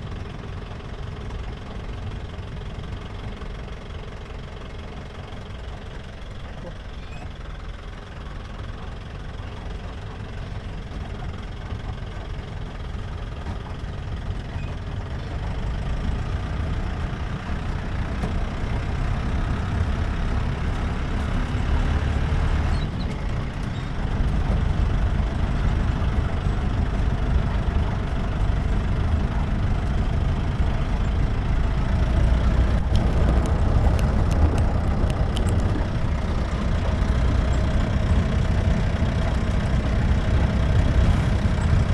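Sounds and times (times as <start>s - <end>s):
car engine running: 0.0s - 41.9s
road and tyre noise: 0.0s - 41.9s.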